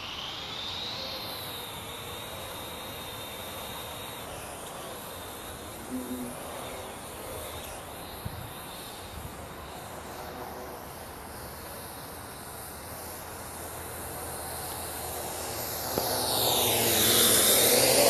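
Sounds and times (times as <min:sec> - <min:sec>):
drone rotors whirring: 0:00.0 - 0:18.0
high whine falling in pitch: 0:00.0 - 0:18.0.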